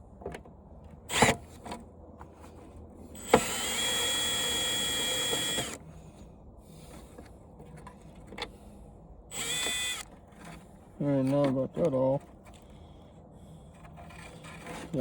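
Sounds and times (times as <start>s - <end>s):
power drill whining: 3.2s - 5.8s, 9.3s - 10.1s.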